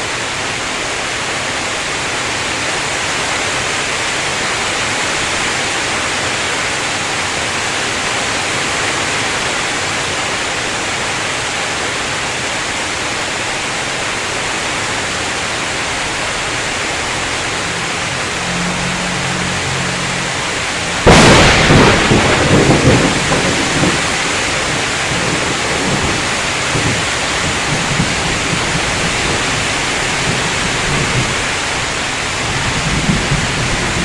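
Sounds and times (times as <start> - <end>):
heavy rain hissing: 0.0 - 34.0
low thunder rumble: 16.0 - 34.0.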